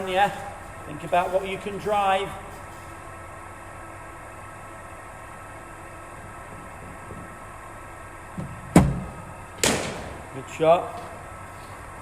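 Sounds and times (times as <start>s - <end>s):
bowling machine humming: 0.0s - 12.0s.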